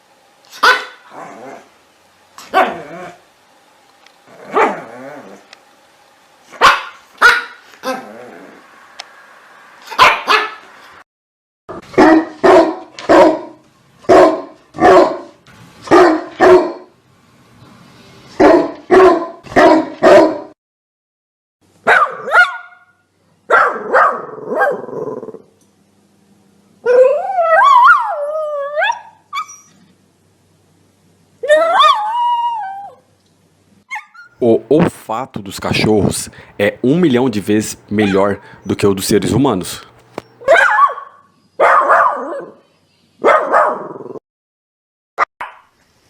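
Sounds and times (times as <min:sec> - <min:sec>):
dogs barking: 0:00.6 - 0:01.2, 0:02.4 - 0:03.2, 0:04.4 - 0:04.9, 0:06.6 - 0:07.6, 0:09.9 - 0:10.7, 0:11.8 - 0:16.9, 0:18.4 - 0:20.6, 0:21.8 - 0:22.9, 0:23.5 - 0:24.9, 0:38.0 - 0:38.7, 0:40.4 - 0:42.6, 0:43.2 - 0:43.9
dog howling: 0:02.5 - 0:03.2, 0:04.3 - 0:05.5, 0:26.8 - 0:29.6, 0:31.4 - 0:33.1, 0:40.4 - 0:42.6.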